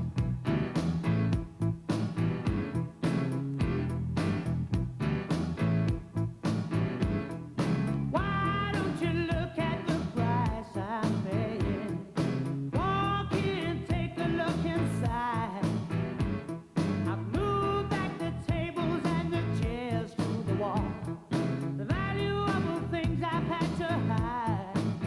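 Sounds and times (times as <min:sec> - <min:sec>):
rock-pop band with steady beat: 0:00.0 - 0:25.0
person singing with vibrato: 0:08.1 - 0:16.1, 0:17.0 - 0:25.0.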